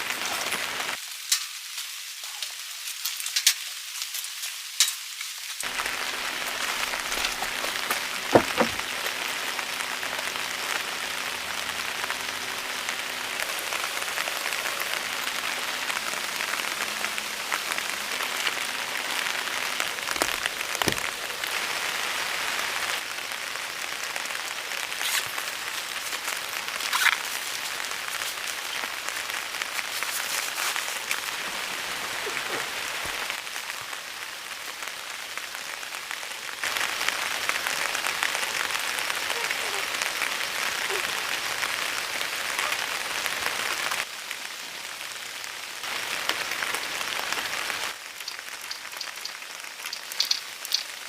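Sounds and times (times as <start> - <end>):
rain pattering: 0.0 - 51.0
sharp drips: 48.1 - 51.0.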